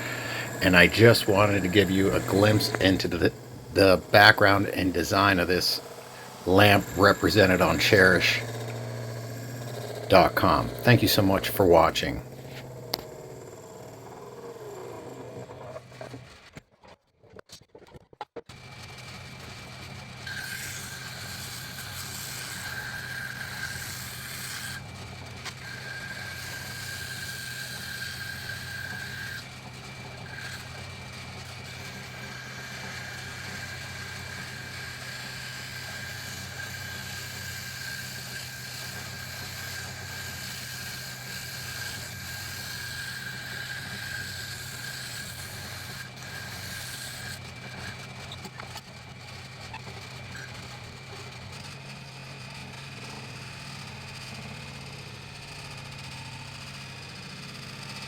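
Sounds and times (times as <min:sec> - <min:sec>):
hiss of tool on spinning wood: 0:00.0 - 0:09.3, 0:25.9 - 0:29.4, 0:31.8 - 0:47.4
lathe whine: 0:00.0 - 0:16.3, 0:19.2 - 0:57.9
wood lathe hum: 0:00.0 - 0:16.3, 0:20.2 - 0:51.7.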